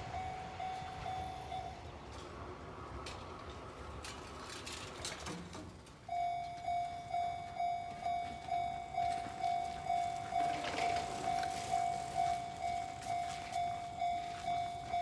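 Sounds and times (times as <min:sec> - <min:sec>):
level crossing warning bell: 0:00.0 - 0:02.0, 0:06.1 - 0:15.0.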